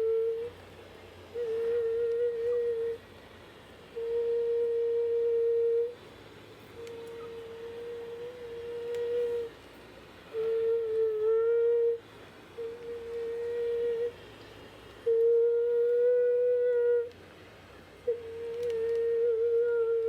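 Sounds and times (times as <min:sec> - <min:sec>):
person humming long notes: 0:00.0 - 0:00.6, 0:01.3 - 0:03.0, 0:03.9 - 0:06.0, 0:06.7 - 0:09.6, 0:10.3 - 0:12.0, 0:12.6 - 0:14.2, 0:15.0 - 0:17.2, 0:18.0 - 0:20.0.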